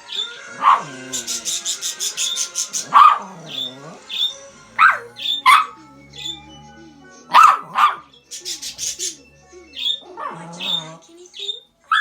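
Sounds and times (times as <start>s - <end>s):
budgies chirping: 0.0s - 12.0s
dog barking: 0.1s - 1.5s, 2.1s - 6.3s, 7.3s - 8.1s, 9.8s - 11.0s.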